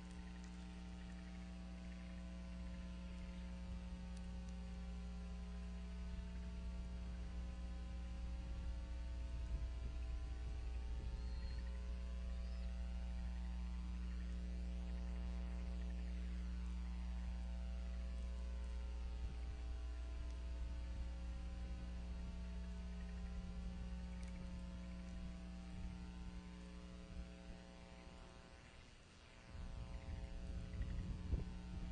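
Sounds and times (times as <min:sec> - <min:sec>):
low rumble: 0:00.0 - 0:28.7, 0:29.4 - 0:31.9
electrical hum: 0:00.0 - 0:31.9
faint high chirps: 0:11.0 - 0:12.8.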